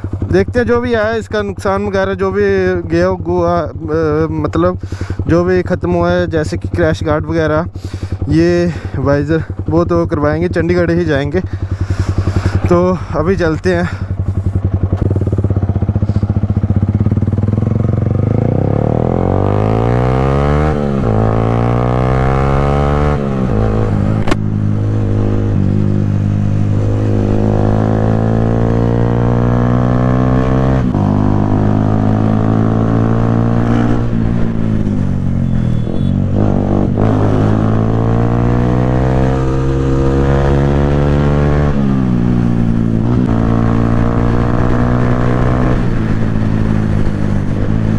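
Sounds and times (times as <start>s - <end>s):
motorcycle engine accelerating: 0.0s - 47.9s
sharp click: 24.2s - 24.4s.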